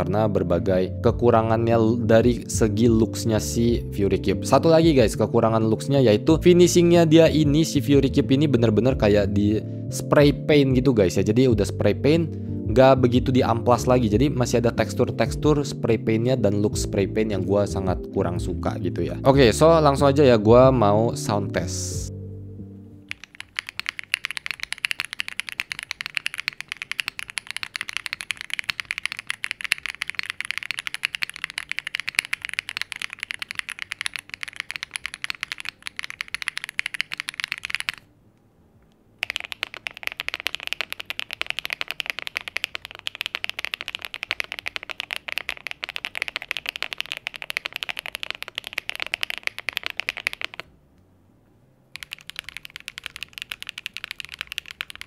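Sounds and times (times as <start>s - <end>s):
mechanical keyboard typing: 23.1s - 38.1s, 39.2s - 50.7s, 52.0s - 55.0s.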